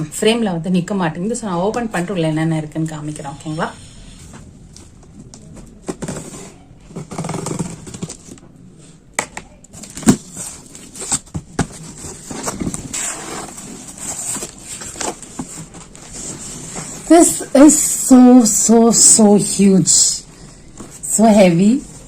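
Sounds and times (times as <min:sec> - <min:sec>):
packaging rustling and scraping: 0:04.2 - 0:09.0, 0:09.7 - 0:17.5.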